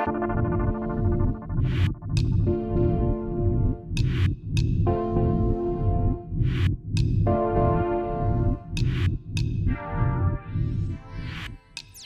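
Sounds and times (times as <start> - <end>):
held synthesizer chords: 0.0 - 4.0, 4.9 - 6.4, 7.2 - 8.8, 9.6 - 12.0
pulsing bass beat: 0.0 - 11.3.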